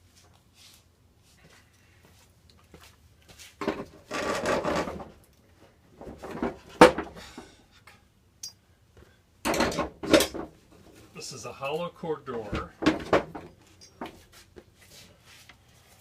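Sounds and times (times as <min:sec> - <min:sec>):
wooden objects scraping and clattering: 0:03.6 - 0:07.6, 0:12.5 - 0:14.3.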